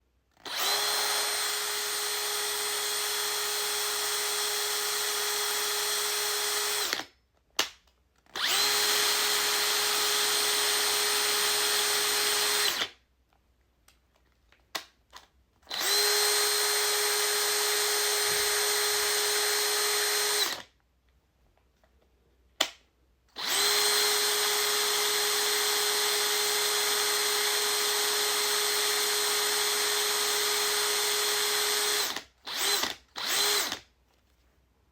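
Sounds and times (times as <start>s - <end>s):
power drill whining: 0.4s - 7.1s, 8.4s - 12.9s, 15.7s - 20.6s, 23.4s - 33.8s
drill trigger blips: 8.4s - 12.9s, 15.7s - 20.6s, 23.4s - 33.8s.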